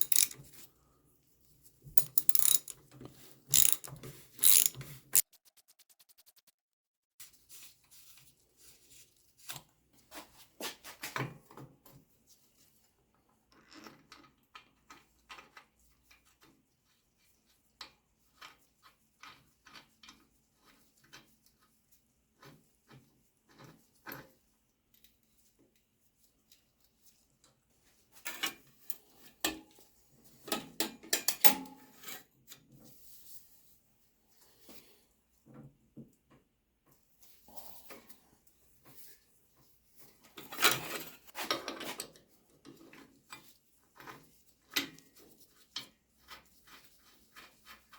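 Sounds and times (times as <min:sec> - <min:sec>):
metal tools clicking and clinking: 0:00.0 - 0:00.4, 0:02.0 - 0:02.8, 0:03.5 - 0:04.9.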